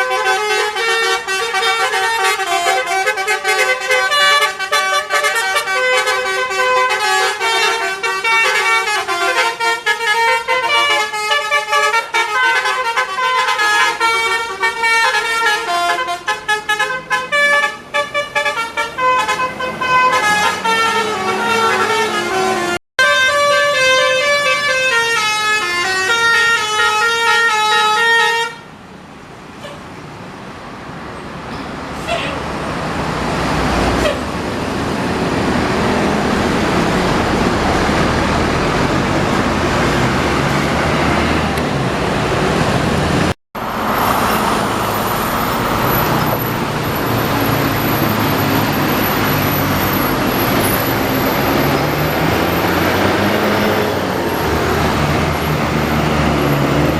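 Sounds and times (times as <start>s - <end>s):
multi-tone bus horn tune: 0.0s - 28.8s, 29.6s - 29.9s, 32.0s - 32.5s, 34.0s - 34.3s, 45.8s - 56.9s
bus engine and road noise: 0.0s - 56.9s.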